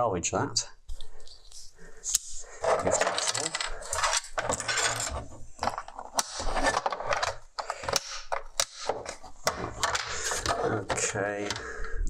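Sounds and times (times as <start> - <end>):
small tools clicking on plastic: 2.1 - 5.0, 5.6 - 12.0.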